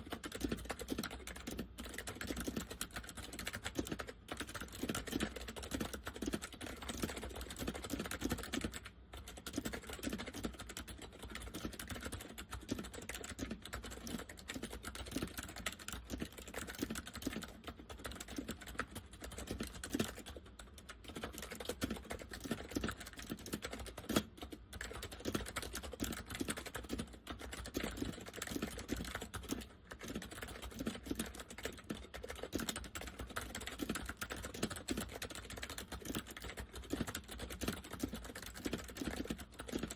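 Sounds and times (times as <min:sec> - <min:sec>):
fast typing on keyboard: 0:00.0 - 0:39.9.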